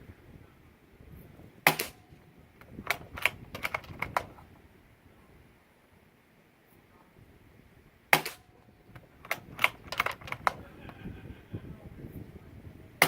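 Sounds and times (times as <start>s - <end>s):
suppressed rifle shot: 1.7s - 2.0s, 8.1s - 10.6s
rifle bolt metallic clicks: 2.6s - 4.5s, 8.2s - 10.6s.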